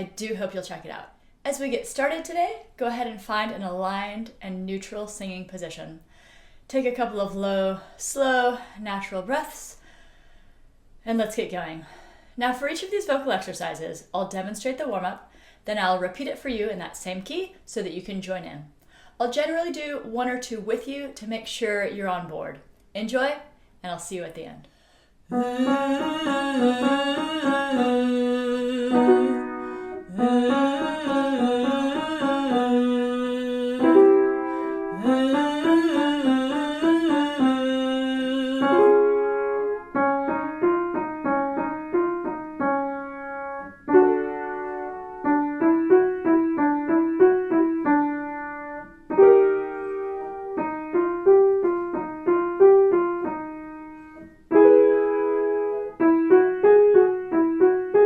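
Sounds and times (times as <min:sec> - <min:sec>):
woman buzzing vocal warm-up: 0:25.3 - 0:39.1
piano playing scale: 0:25.3 - 0:58.0.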